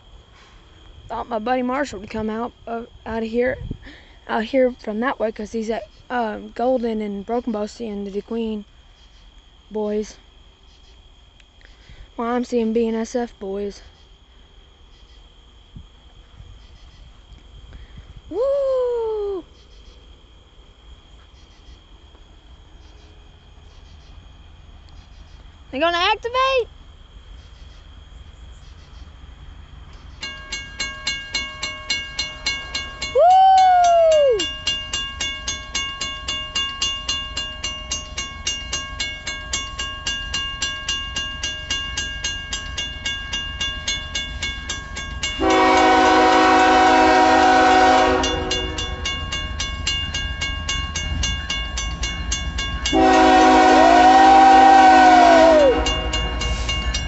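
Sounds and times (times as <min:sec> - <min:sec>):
crossing bell ringing: 0:30.2 - 0:57.0
train air horn blasts: 0:45.4 - 0:49.0, 0:52.9 - 0:56.7.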